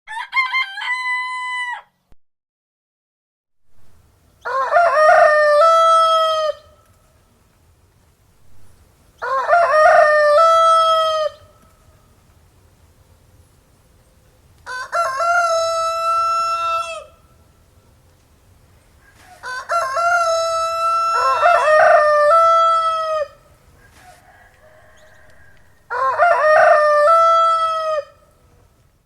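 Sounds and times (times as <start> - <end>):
rooster crowing: 0.1 - 2.0, 4.4 - 6.8, 9.2 - 11.6, 14.6 - 17.2, 19.1 - 28.4
second rooster crowing: 0.1 - 2.0, 4.4 - 6.8, 9.2 - 11.6, 14.6 - 17.2, 19.1 - 28.2.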